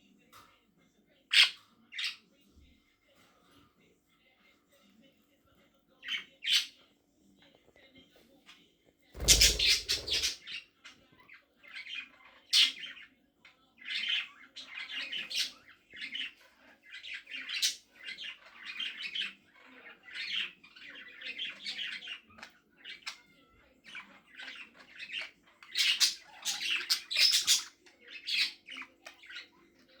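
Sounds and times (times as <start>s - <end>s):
budgerigars chirping and squawking: 1.3s - 2.3s, 6.0s - 6.8s, 9.2s - 13.2s, 13.8s - 23.2s, 23.8s - 30.0s.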